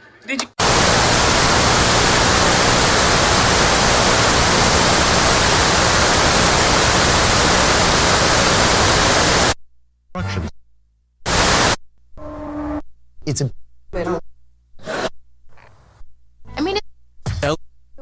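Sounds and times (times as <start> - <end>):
broadcast sound: 0.6 - 9.6, 11.3 - 11.8
tv static hiss: 0.6 - 9.6, 11.3 - 11.8.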